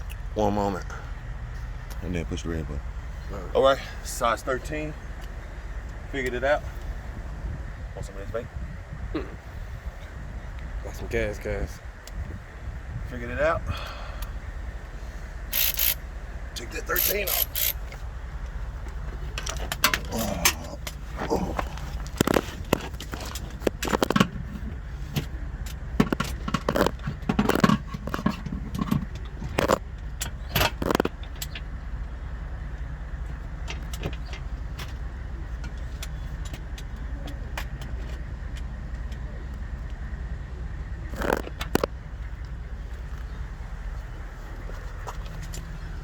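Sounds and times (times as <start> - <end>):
steady low hum: 0.0 - 46.0
metal hand tools clinking: 15.5 - 16.0, 16.9 - 17.8.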